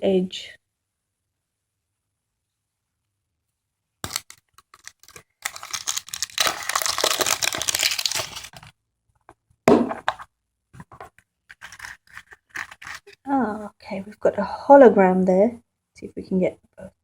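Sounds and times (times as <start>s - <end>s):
wrapper crinkling: 4.0s - 8.7s, 11.5s - 13.2s
wrapper ripping open: 4.0s - 8.7s, 11.5s - 13.2s.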